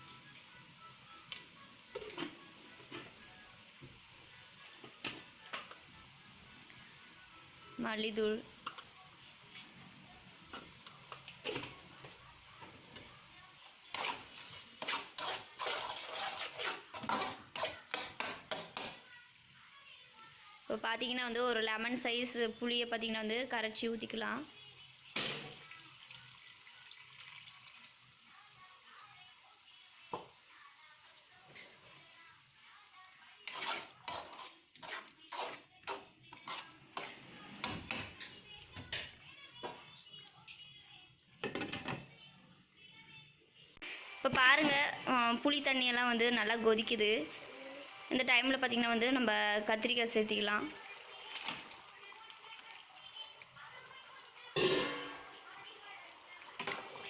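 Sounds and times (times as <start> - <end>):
spoon scraping a cooking pan: 10.5 - 11.9, 13.8 - 19.1, 33.2 - 39.2, 54.5 - 55.5, 56.6 - 57.0.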